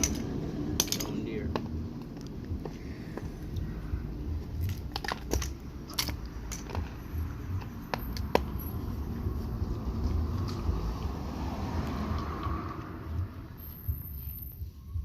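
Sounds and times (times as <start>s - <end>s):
tools and metal parts clicking: 0.0s - 2.3s, 4.4s - 8.8s.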